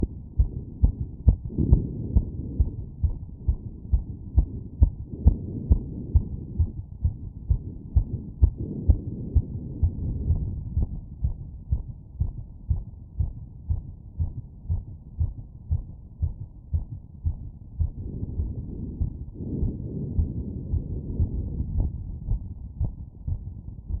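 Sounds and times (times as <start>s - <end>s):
heartbeat thuds: 0.0s - 24.0s.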